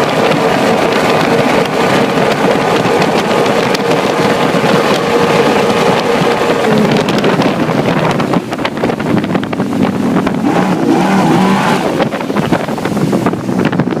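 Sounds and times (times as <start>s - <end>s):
speedboat engine running: 0.0s - 14.0s
wind buffeting microphone: 0.0s - 14.0s.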